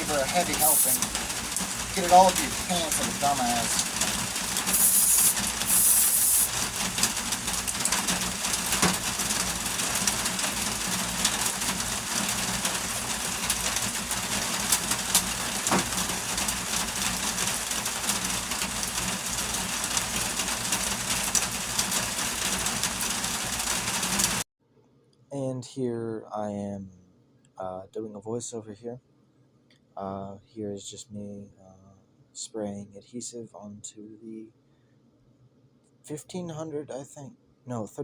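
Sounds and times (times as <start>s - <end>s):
aerosol can hissing sprays: 0.0s - 1.2s, 4.7s - 6.5s
steady rain: 0.0s - 24.4s.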